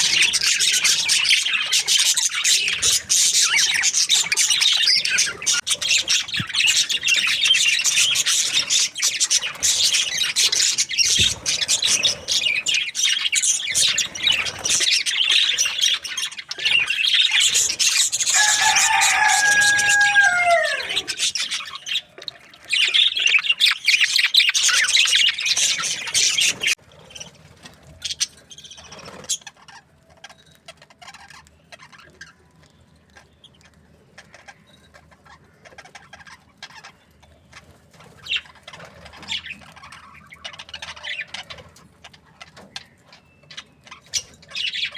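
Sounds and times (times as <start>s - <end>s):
budgerigars chirping and chattering: 0.0s - 44.9s
loud bird call falling in pitch: 18.3s - 21.1s.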